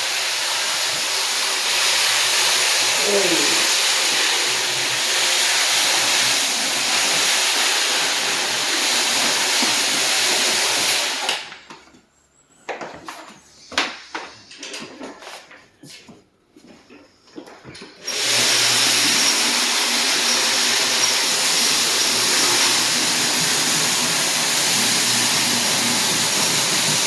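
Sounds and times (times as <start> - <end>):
power sander running: 0.0 - 11.5, 18.0 - 27.0.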